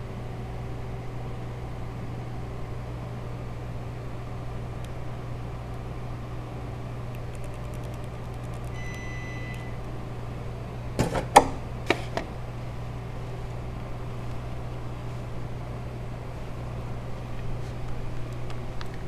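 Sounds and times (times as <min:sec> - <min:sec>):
high beep: 0:08.7 - 0:09.8.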